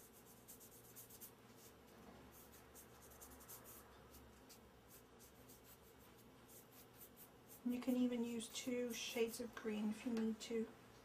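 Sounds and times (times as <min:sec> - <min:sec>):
brush swishing strokes: 0:00.0 - 0:08.0
low room hum: 0:00.0 - 0:11.0.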